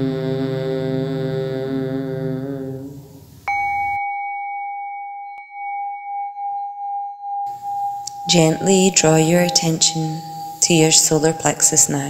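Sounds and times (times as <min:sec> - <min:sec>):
group chanting: 0:00.0 - 0:03.3
bell ringing: 0:03.5 - 0:12.0.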